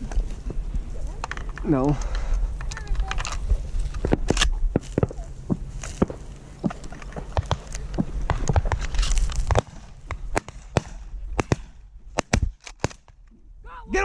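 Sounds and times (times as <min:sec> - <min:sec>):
shotguns firing: 0:09.4 - 0:13.2.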